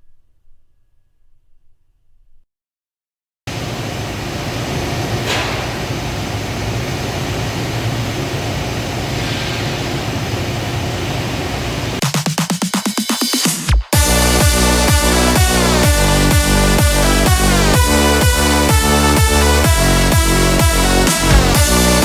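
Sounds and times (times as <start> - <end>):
fast pulsing electronic beat: 12.0 - 22.0.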